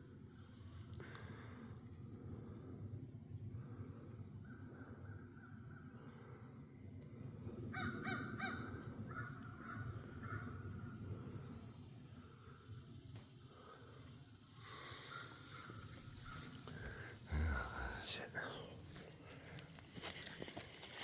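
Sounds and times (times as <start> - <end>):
insects droning: 0.0 - 21.0
crows cawing: 7.7 - 10.5, 15.0 - 17.1.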